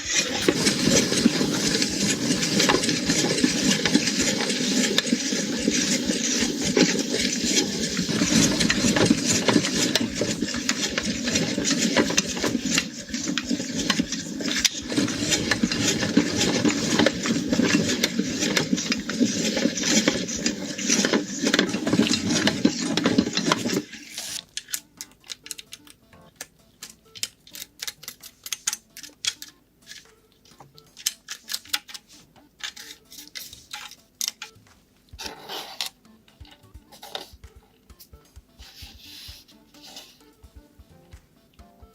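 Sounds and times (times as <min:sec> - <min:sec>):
meat grinder motor hum: 0:00.0 - 0:24.4
crackling and clicking of grinding: 0:00.0 - 0:38.8.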